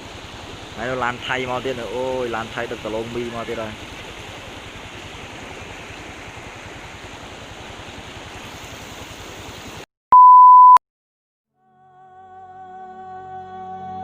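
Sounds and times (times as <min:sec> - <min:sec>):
electronic beep: 0:10.1 - 0:10.8.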